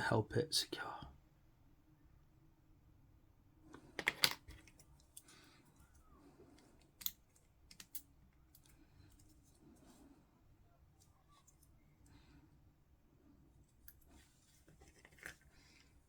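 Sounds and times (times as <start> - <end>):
small plastic parts clicking: 3.7 - 5.3, 6.5 - 9.4.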